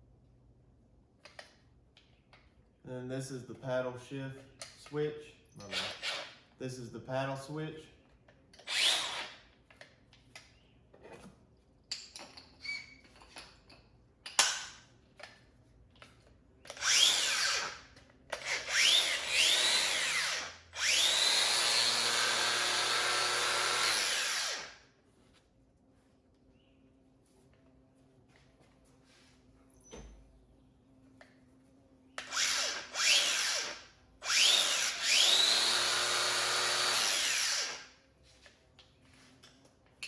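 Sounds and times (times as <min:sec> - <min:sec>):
angle grinder whining: 0:16.8 - 0:17.8, 0:18.4 - 0:24.8, 0:32.2 - 0:37.9.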